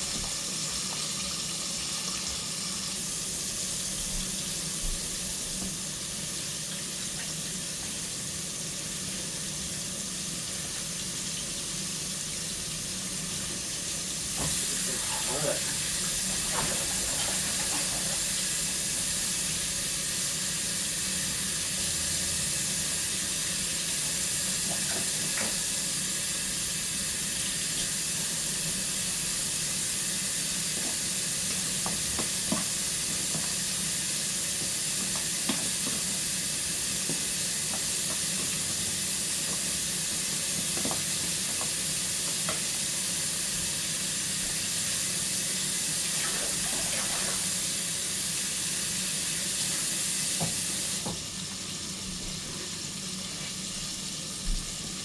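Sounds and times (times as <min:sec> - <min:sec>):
oil sizzling: 0:00.0 - 0:55.0.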